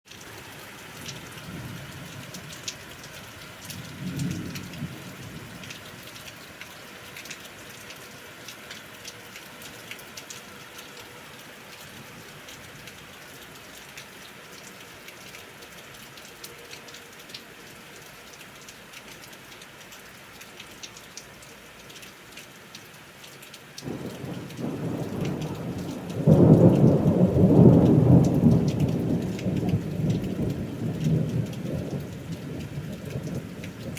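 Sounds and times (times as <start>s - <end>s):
steady rain pattering: 0.0s - 33.9s
distant thunder rumbling: 3.6s - 5.8s, 23.8s - 33.9s
loud rolling thunderclap: 3.8s - 5.6s, 23.8s - 33.9s.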